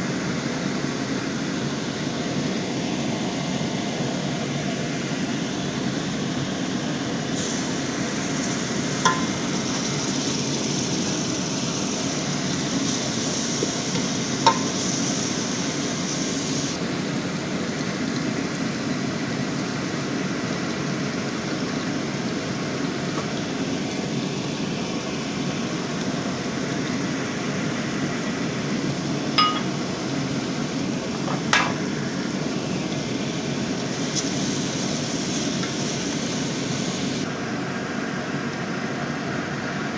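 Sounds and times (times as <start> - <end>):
rushing kitchen noise: 7.2 - 16.8, 31.0 - 37.3
utensil clinking on pot: 9.0 - 9.5, 14.4 - 14.8, 29.4 - 29.7.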